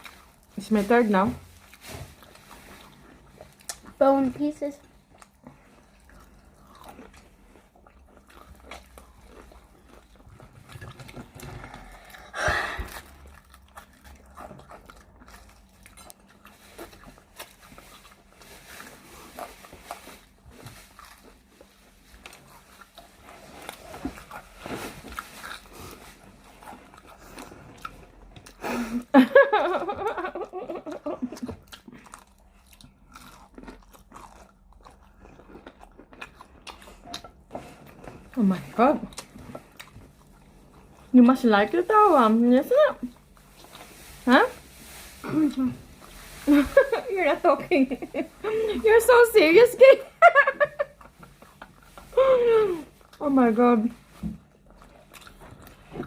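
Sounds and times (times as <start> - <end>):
chewing crispy fried chicken: 0.0 - 56.0.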